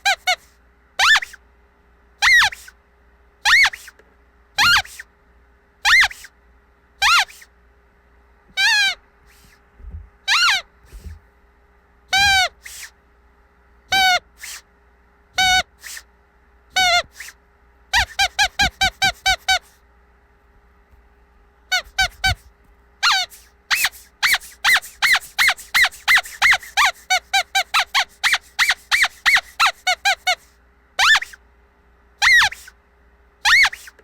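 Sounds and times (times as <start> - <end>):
squeaky dog toy squeaks: 0.0 - 1.4, 2.2 - 2.8, 3.4 - 4.0, 4.6 - 5.1, 5.8 - 6.3, 7.0 - 7.5, 8.5 - 9.6, 10.2 - 11.2, 12.1 - 12.9, 13.9 - 14.6, 15.4 - 16.1, 16.7 - 19.8, 21.7 - 22.4, 23.0 - 31.4, 32.2 - 32.7, 33.4 - 34.0.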